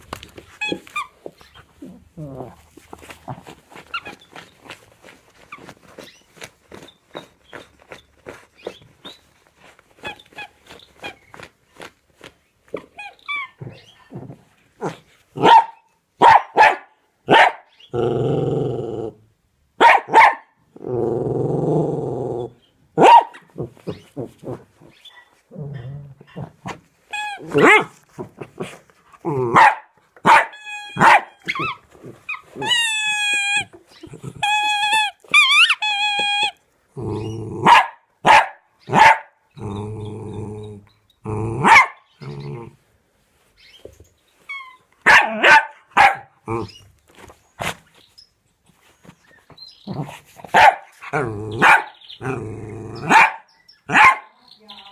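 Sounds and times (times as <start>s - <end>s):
dog growling: 1.7s - 4.2s, 17.9s - 19.3s, 20.8s - 22.6s, 25.5s - 26.8s, 27.4s - 29.6s, 34.0s - 35.2s, 36.9s - 37.7s, 39.5s - 42.8s, 46.4s - 46.8s, 51.0s - 53.2s
dog barking: 14.8s - 17.7s, 19.8s - 20.6s, 23.0s - 23.5s, 29.5s - 31.6s, 37.6s - 39.4s, 41.6s - 42.1s, 45.0s - 46.4s, 50.5s - 52.0s, 53.0s - 54.4s
high squeaks: 30.5s - 36.6s.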